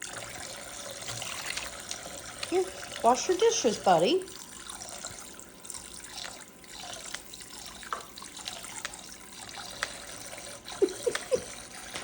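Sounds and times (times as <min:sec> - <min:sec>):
water running from a faucet: 0:00.0 - 0:12.0.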